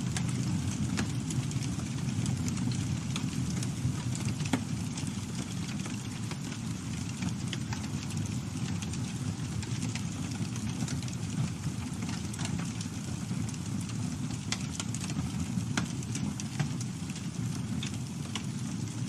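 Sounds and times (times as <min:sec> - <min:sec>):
campfire burning: 0:00.0 - 0:19.0
wood crackling and popping: 0:00.0 - 0:19.0.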